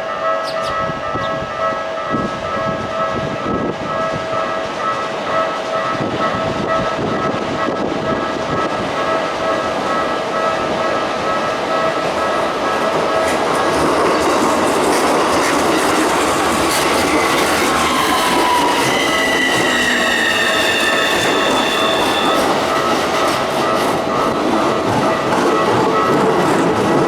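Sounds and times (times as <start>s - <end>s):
train wheel clatter: 5.7s - 27.0s.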